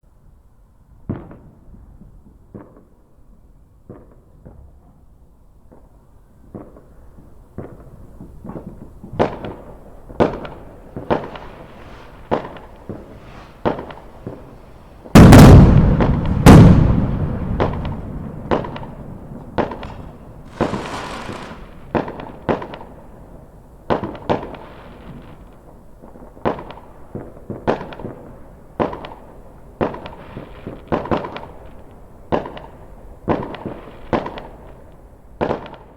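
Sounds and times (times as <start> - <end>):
loud fireworks booms: 6.4 - 25.4
fireworks bangs: 7.6 - 24.6
high hiss: 10.4 - 15.2, 19.8 - 22.0.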